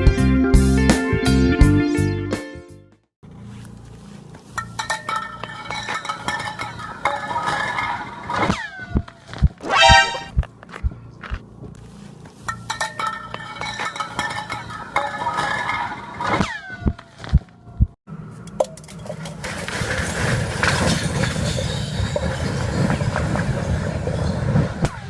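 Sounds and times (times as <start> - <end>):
falling laser-like tones: 9.6 - 10.3.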